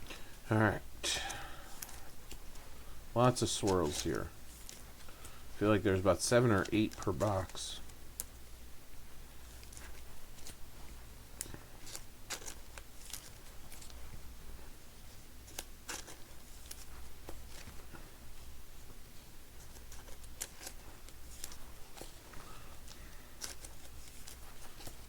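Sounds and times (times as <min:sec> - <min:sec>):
cards clicking and rustling: 0:01.2 - 0:02.7, 0:03.3 - 0:08.3, 0:09.5 - 0:14.1, 0:15.4 - 0:18.0, 0:19.6 - 0:25.0.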